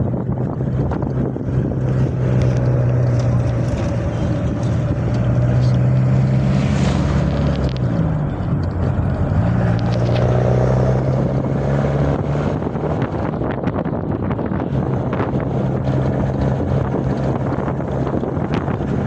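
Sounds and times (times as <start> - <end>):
engine humming: 0.0 - 19.0.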